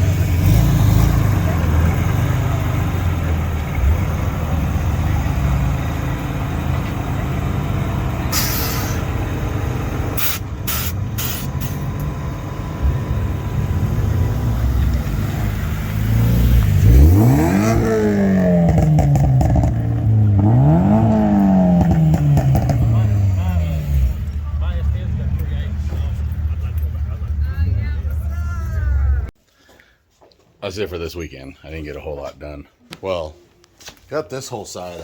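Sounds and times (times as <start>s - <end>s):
car engine revving: 0.0s - 29.3s
car engines rumbling: 0.0s - 29.4s
short sharp noises: 8.3s - 9.1s, 10.2s - 11.8s.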